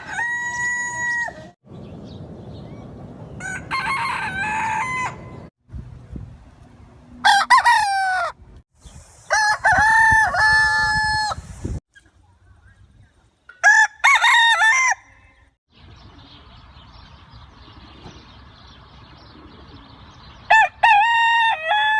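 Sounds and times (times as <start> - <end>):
rooster crowing: 0.0 - 1.5, 3.4 - 5.5, 7.2 - 8.4, 13.6 - 15.5.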